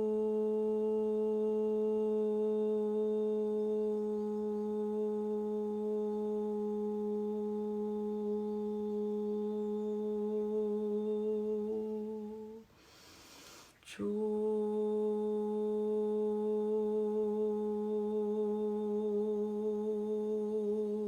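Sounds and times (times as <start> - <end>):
woman humming a chanted note: 0.0 - 12.7, 13.9 - 21.0
in-breath: 12.6 - 13.9.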